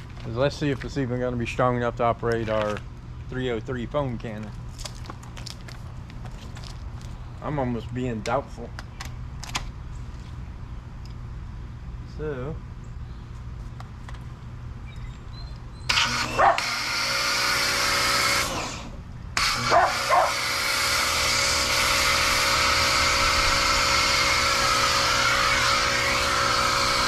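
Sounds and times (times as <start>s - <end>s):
pressure washer whining: 15.9s - 27.0s
dog barking: 16.4s - 16.7s, 19.7s - 20.4s.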